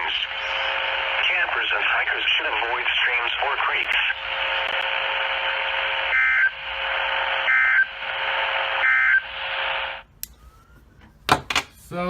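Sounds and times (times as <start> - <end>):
steady radio hiss: 0.0 - 10.2
shrill two-tone data bursts: 5.7 - 10.0.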